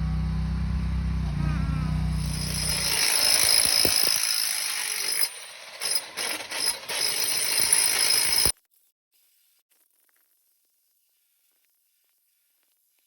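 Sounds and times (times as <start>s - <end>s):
digging chain rattling and clinking: 2.2s - 8.5s.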